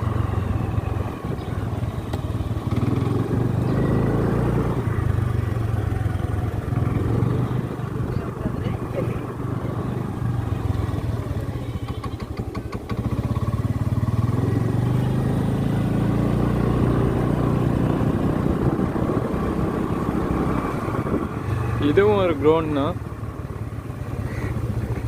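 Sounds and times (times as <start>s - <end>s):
small vehicle engine running: 0.0s - 25.0s.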